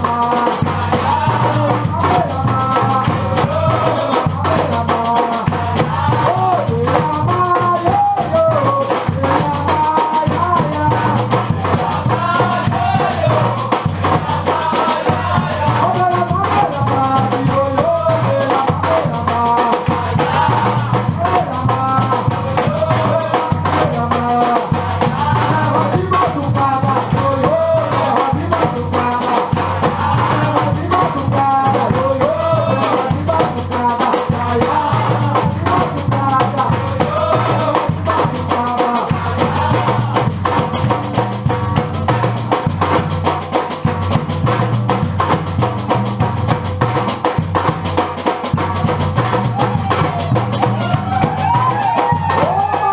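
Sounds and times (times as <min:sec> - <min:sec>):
deep bass drum beats: 0:00.0 - 0:52.9
percussion ensemble playing: 0:00.0 - 0:52.9.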